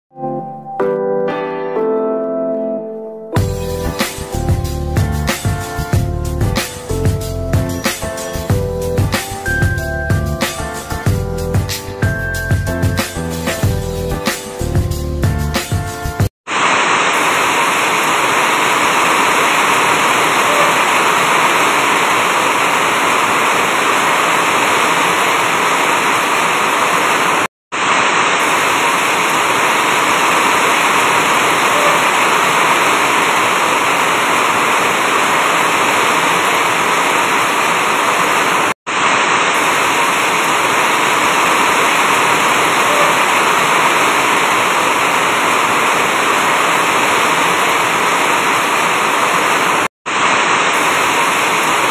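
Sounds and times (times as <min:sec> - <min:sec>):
heavy rain on a roof: 0:16.5 - 0:51.9.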